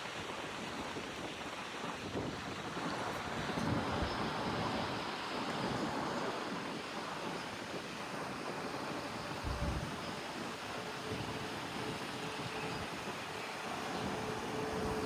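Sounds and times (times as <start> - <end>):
steady rushing outdoor noise: 0.0 - 15.0
wind buffeting microphone: 6.8 - 15.0.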